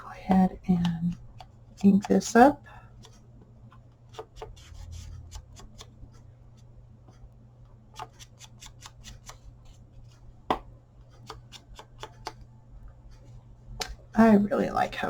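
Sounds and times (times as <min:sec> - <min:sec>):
ink pad tapping paper: 0:00.2 - 0:02.4, 0:10.5 - 0:12.4.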